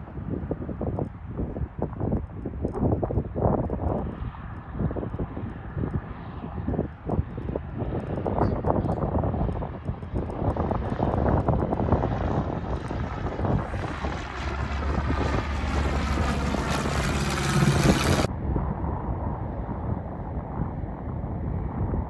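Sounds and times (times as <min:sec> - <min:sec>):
wind buffeting microphone: 0:00.0 - 0:22.0
aircraft engines passing: 0:03.9 - 0:18.4
engine whine: 0:10.8 - 0:18.3.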